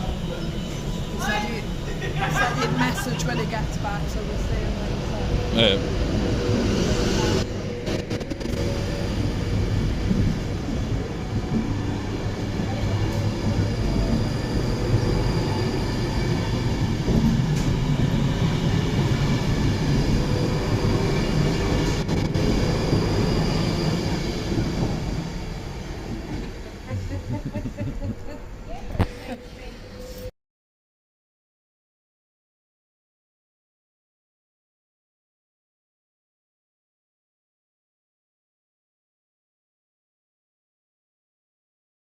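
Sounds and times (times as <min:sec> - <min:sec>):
train running on rails: 0:00.0 - 0:30.3.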